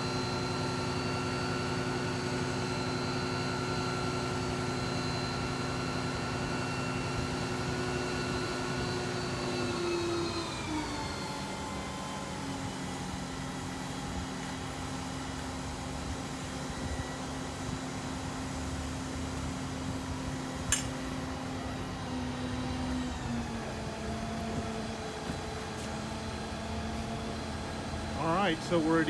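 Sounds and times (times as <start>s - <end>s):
crane engine humming: 0.0s - 29.0s
sharp click: 20.7s - 21.0s.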